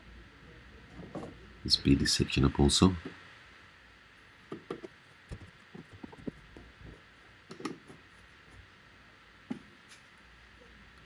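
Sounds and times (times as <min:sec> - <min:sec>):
faint clicks and knocks of handling: 0:04.5 - 0:08.6.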